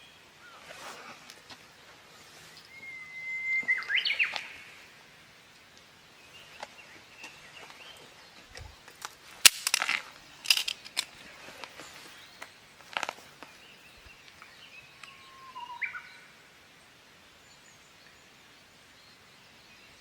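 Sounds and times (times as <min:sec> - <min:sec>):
bird whistling and warbling: 0:02.7 - 0:04.5
sharp clicks: 0:09.4 - 0:11.1.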